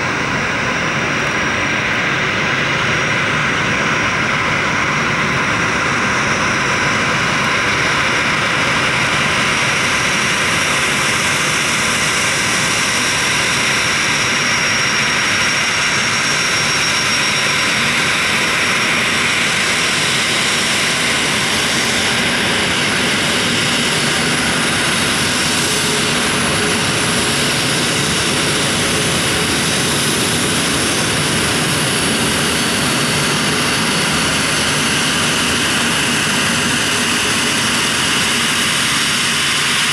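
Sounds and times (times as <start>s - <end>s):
jet engines running: 0.0s - 39.9s.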